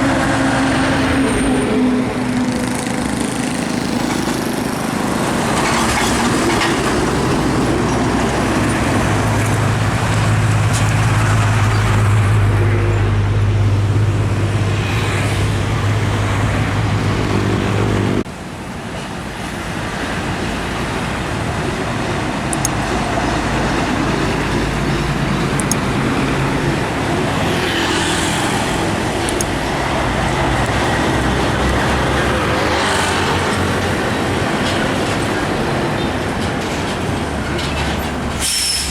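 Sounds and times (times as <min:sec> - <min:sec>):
heavy trucks passing: 0:00.0 - 0:38.9.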